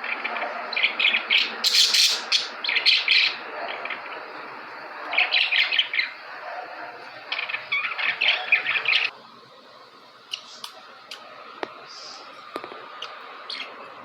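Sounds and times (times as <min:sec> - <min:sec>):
budgerigars chirping: 0:00.3 - 0:04.1, 0:07.3 - 0:09.1.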